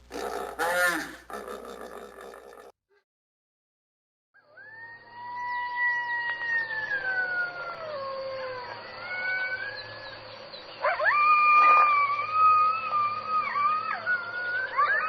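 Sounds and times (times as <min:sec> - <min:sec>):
jackal howling: 0:00.0 - 0:02.7.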